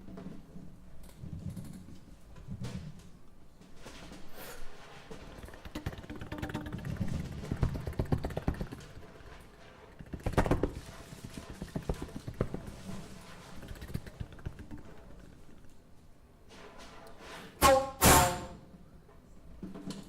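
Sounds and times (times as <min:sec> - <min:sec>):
drum kit taps and strikes: 0:05.4 - 0:09.0.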